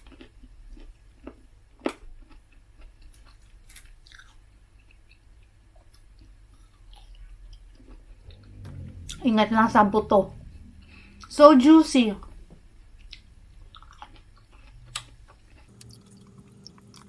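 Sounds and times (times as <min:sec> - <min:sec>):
wet chewing sounds: 0:00.0 - 0:08.2, 0:13.1 - 0:17.0.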